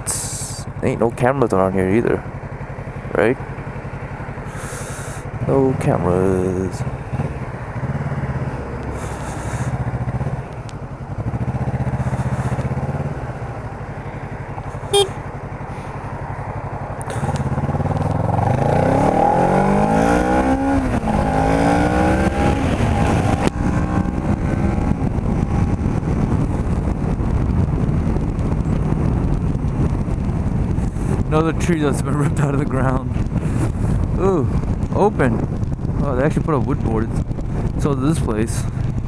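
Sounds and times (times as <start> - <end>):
motorcycle engine accelerating: 0.0 - 39.0
short beep: 14.9 - 15.2.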